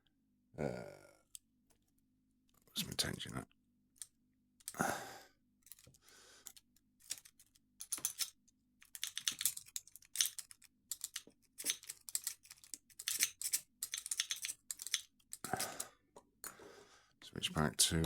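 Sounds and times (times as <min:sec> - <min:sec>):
lock pick rattling in padlock: 0:05.6 - 0:15.9.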